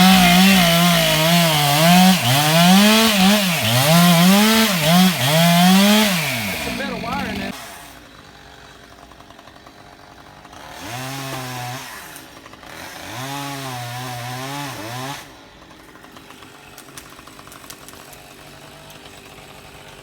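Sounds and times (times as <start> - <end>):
chainsaw idling and revving: 0.0 - 20.0.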